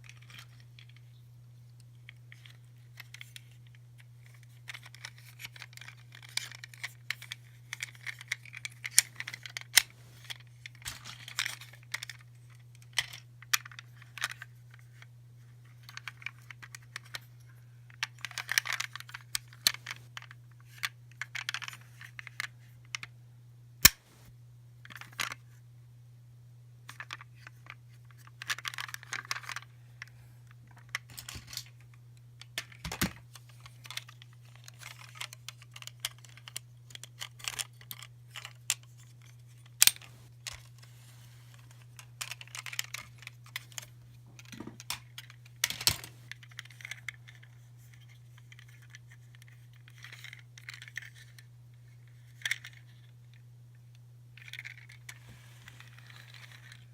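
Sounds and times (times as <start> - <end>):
plastic toys clicking and rattling: 1.9 - 15.0, 15.7 - 17.3, 17.9 - 23.1, 26.9 - 30.1, 30.7 - 40.9, 41.5 - 53.4, 54.4 - 56.9.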